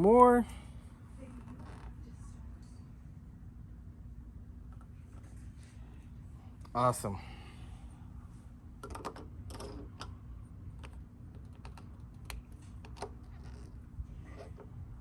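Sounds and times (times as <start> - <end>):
steady low hum: 0.0 - 15.0
small parts clicking and tapping: 8.8 - 10.2.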